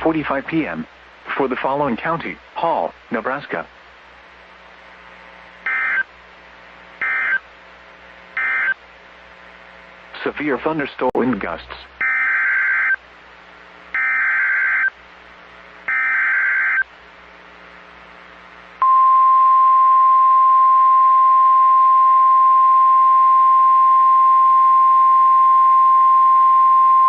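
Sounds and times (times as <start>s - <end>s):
screechy data bursts: 5.6s - 6.0s, 7.0s - 7.4s, 8.4s - 8.8s, 12.0s - 13.0s, 14.0s - 14.9s, 15.9s - 16.8s
steady warning alarm tone: 5.7s - 6.1s, 7.0s - 7.4s, 8.4s - 8.8s, 12.0s - 13.0s, 14.0s - 15.0s, 15.9s - 16.9s.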